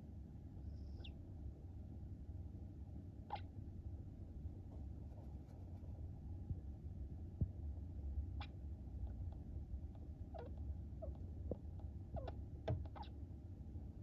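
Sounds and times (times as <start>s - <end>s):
hamster hiccup sounds: 12.2s - 13.1s.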